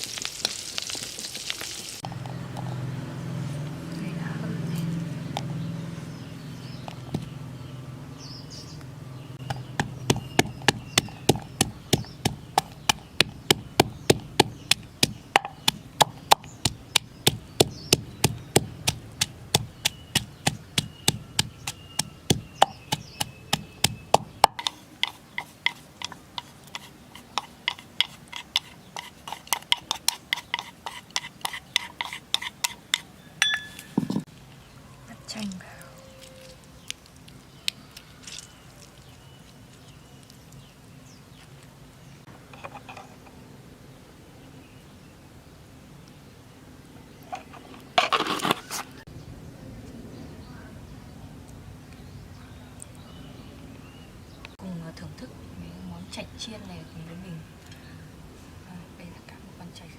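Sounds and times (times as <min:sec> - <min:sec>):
knife chopping on cutting board: 0:09.8 - 0:25.8.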